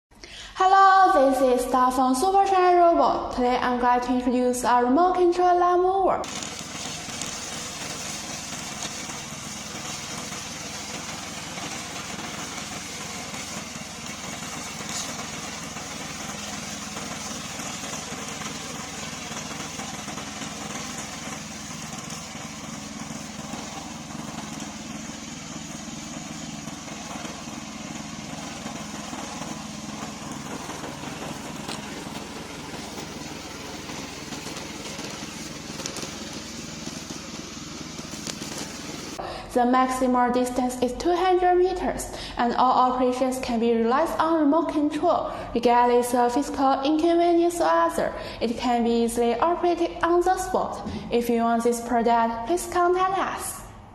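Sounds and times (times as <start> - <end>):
lawn mower engine running: 6.2 - 39.2.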